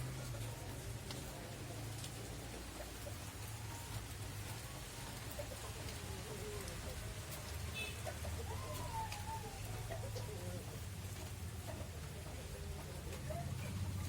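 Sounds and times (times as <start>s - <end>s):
birds calling: 0.0s - 14.0s.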